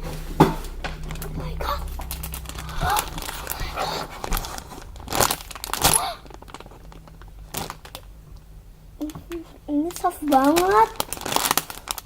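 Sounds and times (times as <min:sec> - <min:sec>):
packaging wrapper crinkling: 0:04.2 - 0:08.1, 0:10.0 - 0:12.0.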